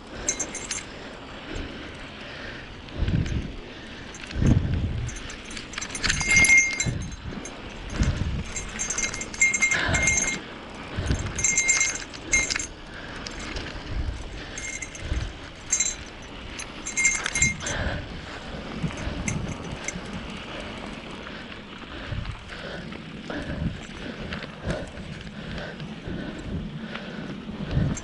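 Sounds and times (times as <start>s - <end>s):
metallic jingles: 0.0s - 2.1s, 3.1s - 21.3s, 27.7s - 28.0s
bicycle rattling over rough ground: 0.0s - 28.0s.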